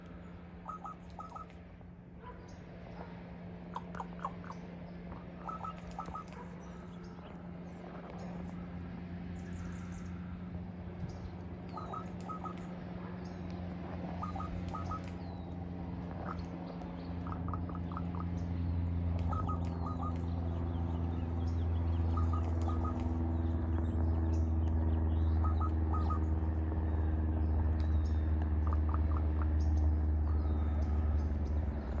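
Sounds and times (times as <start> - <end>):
steady low hum: 0.0 - 32.0
faint bird chirps: 0.2 - 1.5, 5.4 - 7.4, 9.3 - 13.4, 14.1 - 15.6, 16.2 - 26.3
crow calling: 0.6 - 1.5, 5.2 - 6.8, 11.7 - 12.7, 14.0 - 21.1, 21.9 - 23.2, 25.1 - 26.5.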